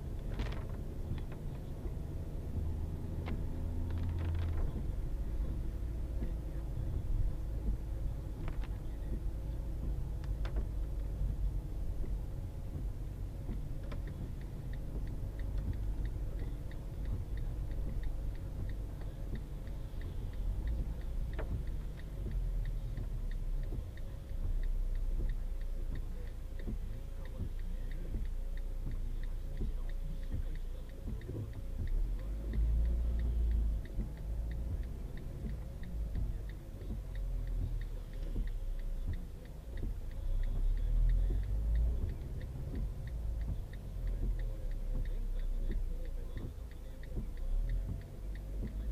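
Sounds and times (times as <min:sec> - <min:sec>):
car rumble inside cabin: 0:00.0 - 0:48.9
faint regular ticking: 0:00.0 - 0:48.9.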